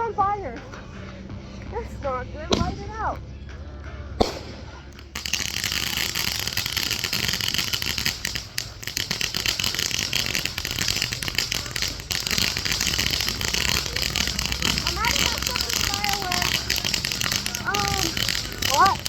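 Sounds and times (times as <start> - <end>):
firework crackling hiss: 4.2 - 19.0.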